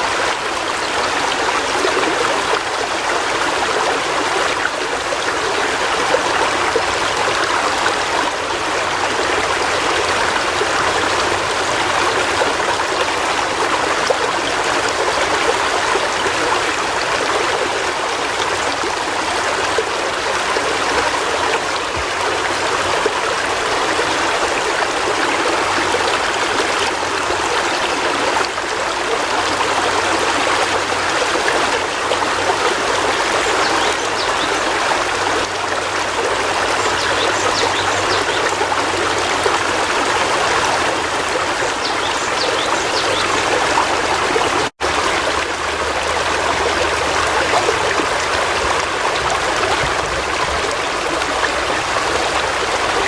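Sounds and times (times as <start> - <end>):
river water flowing over rocks: 0.0 - 53.0.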